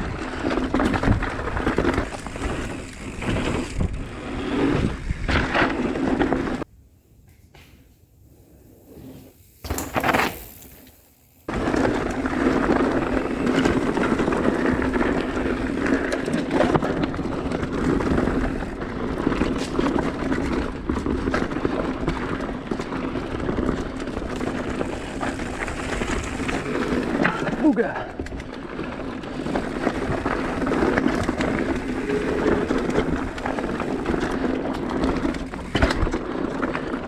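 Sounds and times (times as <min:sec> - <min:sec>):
rocks rattling under wheels: 0:00.0 - 0:06.6, 0:09.5 - 0:37.0
wind and tyre noise: 0:00.0 - 0:37.0.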